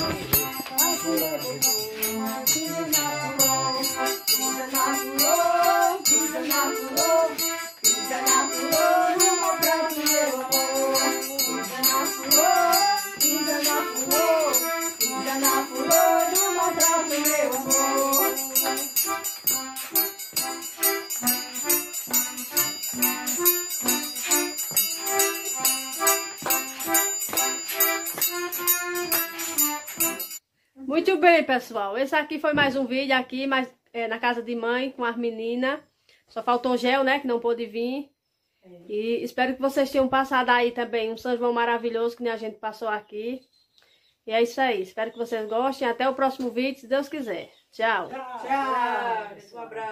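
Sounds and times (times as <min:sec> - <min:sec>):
person singing: 0:00.0 - 0:19.7
music with jingling percussion: 0:00.0 - 0:30.4.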